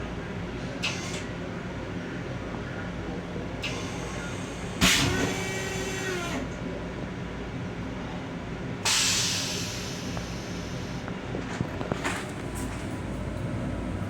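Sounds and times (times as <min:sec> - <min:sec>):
train rumbling: 0:11.1 - 0:14.0.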